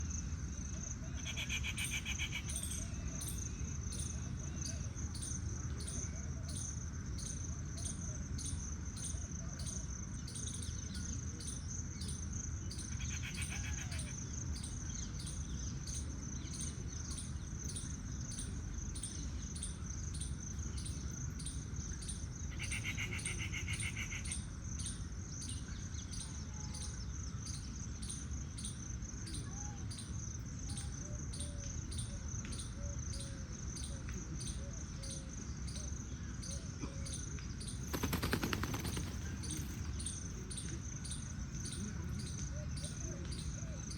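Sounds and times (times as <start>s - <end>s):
high insect drone: 37.6s - 43.9s.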